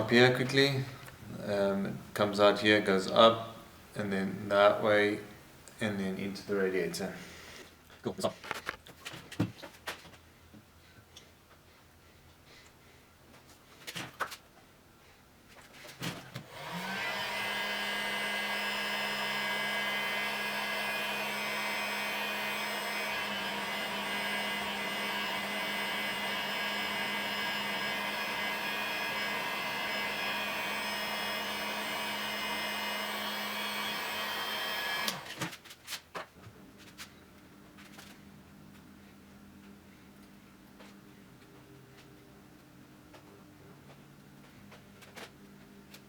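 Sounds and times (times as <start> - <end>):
heat gun blowing: 16.4 - 35.5.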